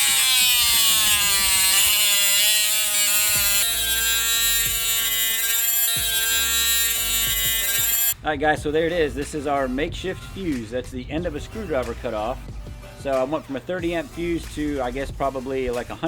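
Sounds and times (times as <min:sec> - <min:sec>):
power tool buzzing cutting steel: 0:00.0 - 0:08.2
background music: 0:06.0 - 0:16.0.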